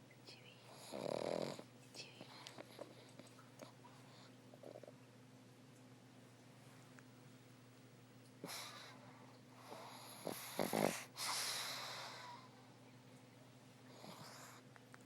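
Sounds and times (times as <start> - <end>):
dog snoring: 0.7 - 1.7, 2.3 - 5.0, 8.4 - 9.0, 9.6 - 12.5, 13.9 - 14.6.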